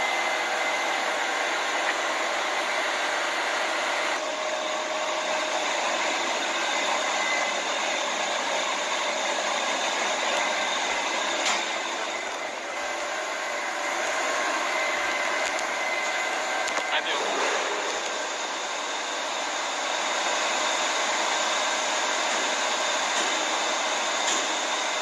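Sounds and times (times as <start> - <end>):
lathe whirring hiss: 0.0 - 25.0.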